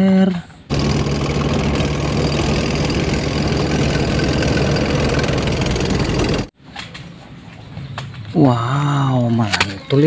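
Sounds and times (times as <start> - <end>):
heavy engine idling: 0.7 - 6.5.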